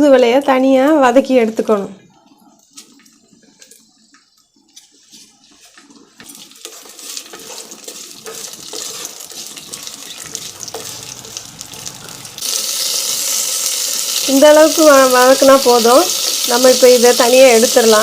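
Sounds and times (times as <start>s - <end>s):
leaves sizzling in a pan: 2.6s - 18.0s.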